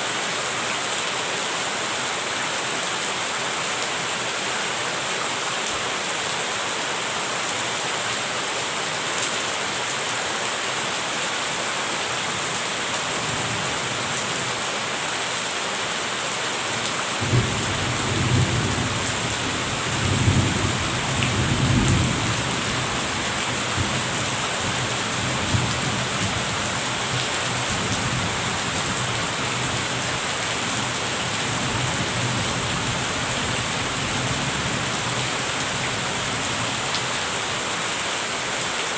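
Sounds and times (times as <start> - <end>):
rain hiss: 0.0 - 38.9
thunder rumbling: 17.2 - 26.6.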